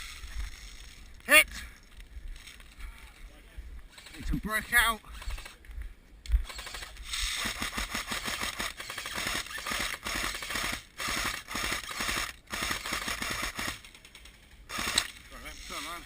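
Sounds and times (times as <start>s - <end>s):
airsoft gun firing full-auto: 6.4s - 13.8s, 14.7s - 15.2s.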